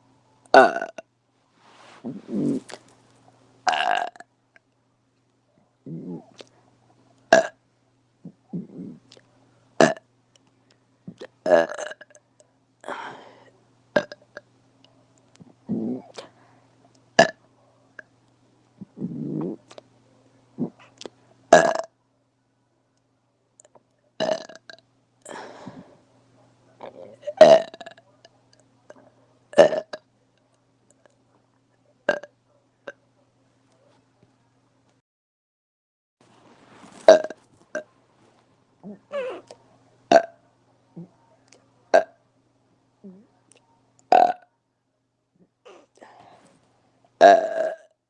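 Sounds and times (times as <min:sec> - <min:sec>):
woman burping: 0:00.5 - 0:01.0, 0:26.9 - 0:28.0, 0:38.8 - 0:40.3.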